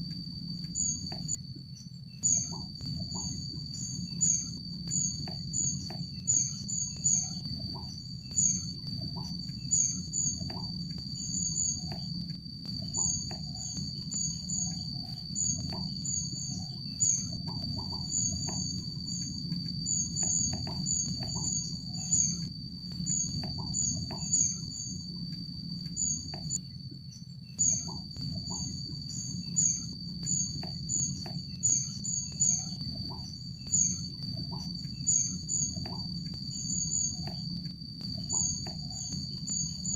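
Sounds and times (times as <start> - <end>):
high insect drone: 0.0 - 39.9.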